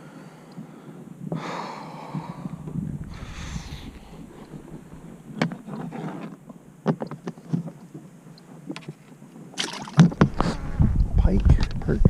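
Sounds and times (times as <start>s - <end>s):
handling clicks and knocks in boat: 4.4s - 10.4s.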